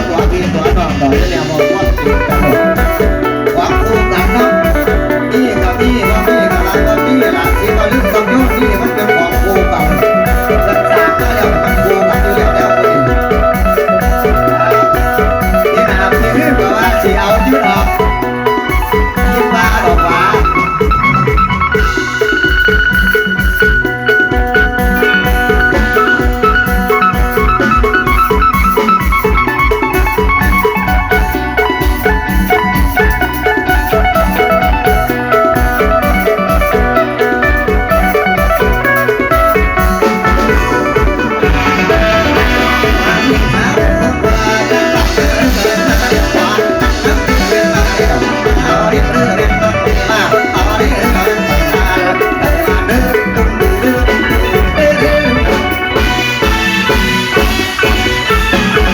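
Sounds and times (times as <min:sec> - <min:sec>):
plucked string melody: 0:00.0 - 0:58.9
steady drum beat: 0:00.0 - 0:58.9.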